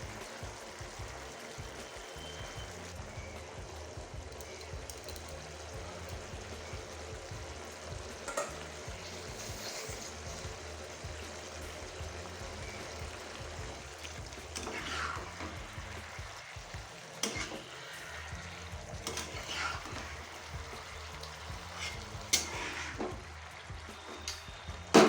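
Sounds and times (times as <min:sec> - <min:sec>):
vegetables sizzling in a pan: 0:00.0 - 0:25.0
spatula scraping and stirring: 0:08.2 - 0:11.7, 0:12.6 - 0:23.3.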